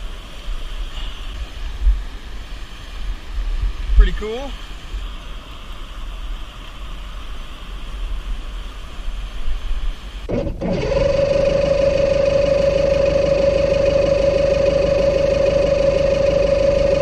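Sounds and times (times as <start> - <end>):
loud mechanical whine: 10.3 - 17.0.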